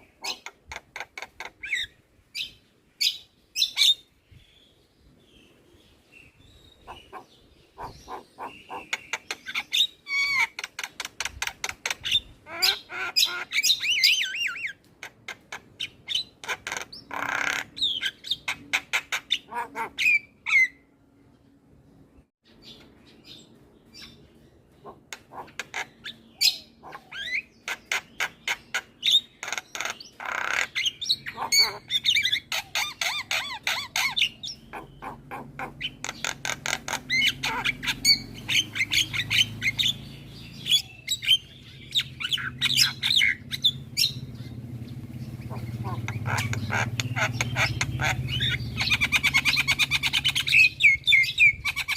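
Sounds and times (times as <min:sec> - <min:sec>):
myna chattering: 0:29.4 - 0:40.0, 0:42.0 - 0:51.0.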